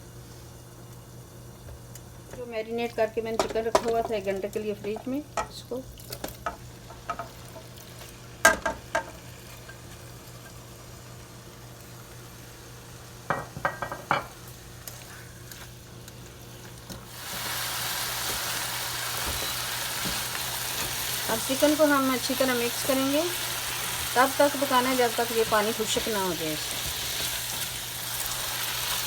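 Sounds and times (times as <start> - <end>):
chicken sizzling in butter: 14.3 - 29.0.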